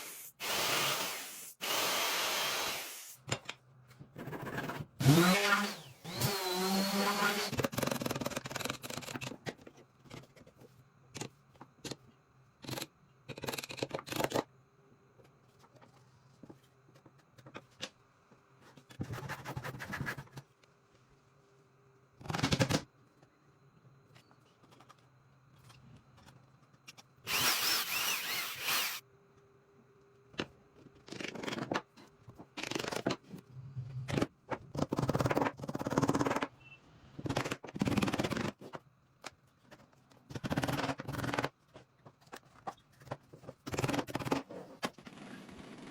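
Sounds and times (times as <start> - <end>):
woodworking tool bursts: 27.3 - 29.0.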